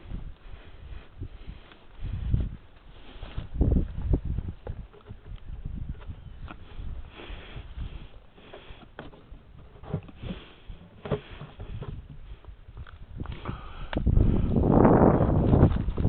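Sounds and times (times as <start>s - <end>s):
clicks and rustles underfoot: 0.0s - 16.0s
person breathing through nose: 6.7s - 9.0s, 13.3s - 14.7s.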